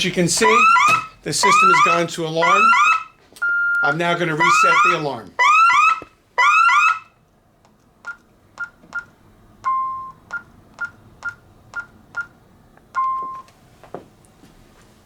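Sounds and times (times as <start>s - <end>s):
keypad key beeps: 8.0s - 12.3s, 13.0s - 13.5s
longer lower keypad tone: 13.0s - 13.5s.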